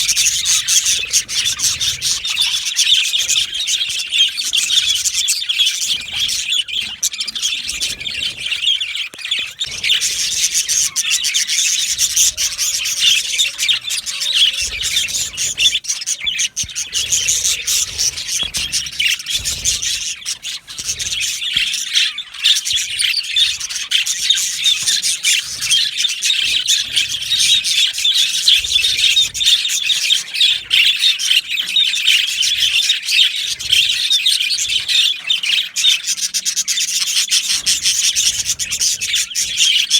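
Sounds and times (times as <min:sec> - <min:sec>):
budgerigars chirping and chattering: 0:00.0 - 0:39.9.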